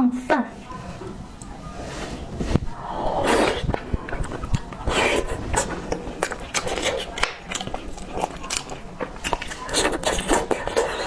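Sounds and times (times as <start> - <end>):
noisy slurps: 1.8 - 11.0
wet chewing and lip smacking: 3.2 - 11.0.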